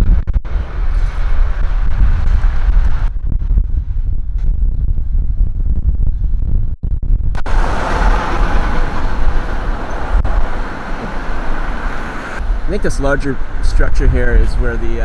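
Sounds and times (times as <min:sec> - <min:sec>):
wind on microphone: 0:00.0 - 0:15.0
road traffic: 0:07.4 - 0:15.0.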